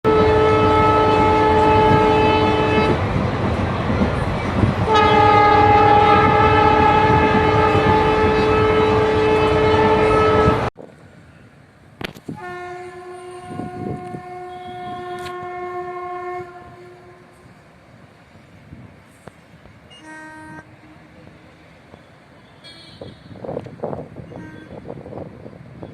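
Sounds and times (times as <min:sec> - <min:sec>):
locomotive horn blasts: 0:00.0 - 0:03.0, 0:04.9 - 0:10.7, 0:12.3 - 0:17.4, 0:19.9 - 0:21.1, 0:22.4 - 0:23.5, 0:24.3 - 0:25.0
passing freight train: 0:00.0 - 0:25.9.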